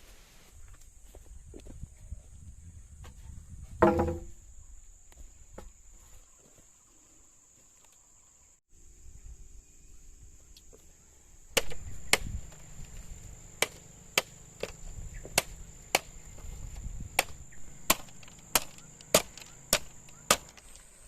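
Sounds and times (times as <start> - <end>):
high insect drone: 0.5 - 21.0
sharp chopping strikes: 11.6 - 13.0, 13.6 - 16.2, 17.1 - 20.6.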